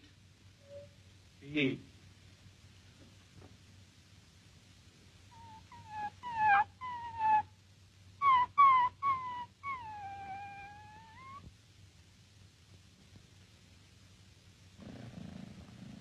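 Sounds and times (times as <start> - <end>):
small dog whimpering: 5.3 - 7.5, 8.2 - 11.5.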